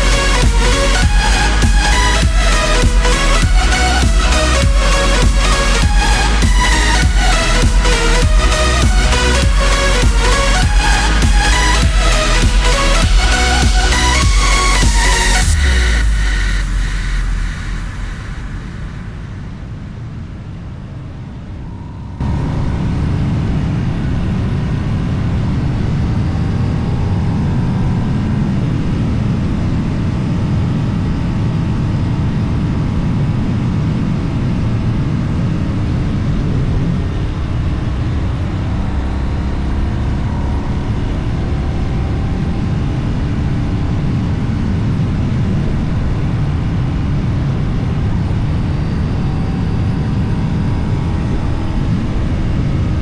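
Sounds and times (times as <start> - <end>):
car engine humming: 0.0 - 20.3, 21.4 - 29.0
wind rushing: 0.0 - 24.8.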